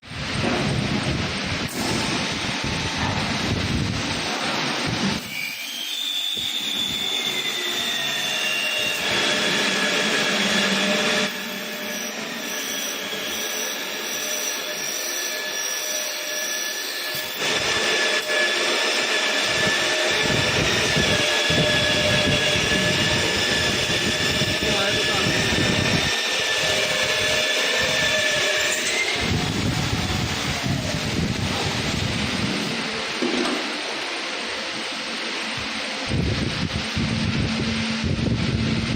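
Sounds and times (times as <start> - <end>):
electric motor whine: 17.1 - 33.1.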